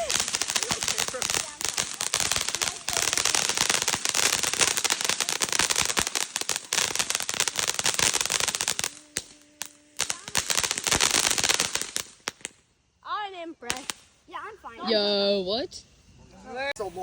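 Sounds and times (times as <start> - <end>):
fireworks popping: 0.0 - 12.7, 13.6 - 14.5.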